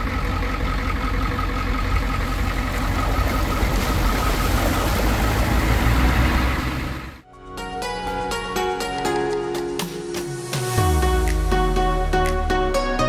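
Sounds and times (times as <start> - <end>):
vehicle engine running: 0.0 - 7.2.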